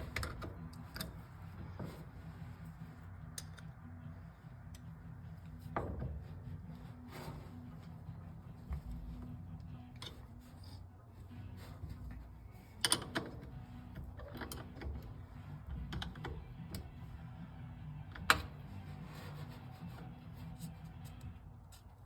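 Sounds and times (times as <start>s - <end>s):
metal hardware clicks and taps: 0.0s - 1.3s, 3.3s - 3.9s, 12.8s - 17.0s, 18.1s - 18.6s
low steady hum: 0.0s - 22.0s.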